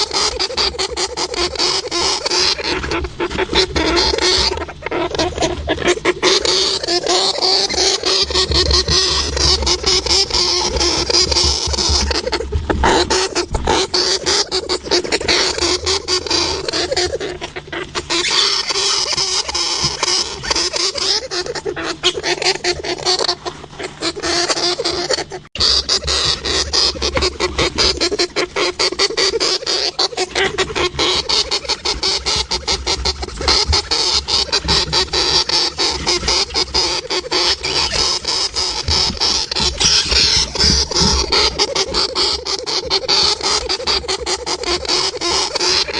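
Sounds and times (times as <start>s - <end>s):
hamster clicking: 0.0s - 17.4s
hamster squeaks: 0.0s - 45.9s.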